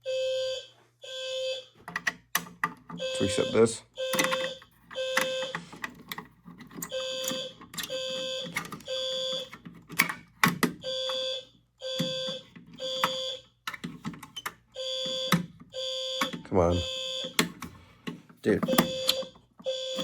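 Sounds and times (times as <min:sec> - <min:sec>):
fire alarm horn blasts: 0:00.0 - 0:01.7, 0:03.0 - 0:05.6, 0:06.9 - 0:09.5, 0:10.8 - 0:13.5, 0:14.8 - 0:17.4, 0:18.6 - 0:20.0.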